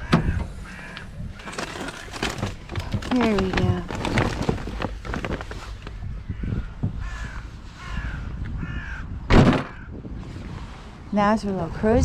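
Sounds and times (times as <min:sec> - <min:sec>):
crows cawing: 0:00.0 - 0:01.2, 0:06.1 - 0:10.0.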